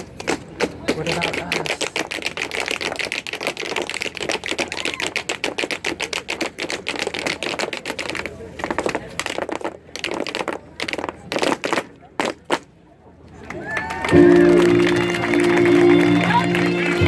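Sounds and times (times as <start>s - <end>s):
audience applauding: 13.4s - 17.0s.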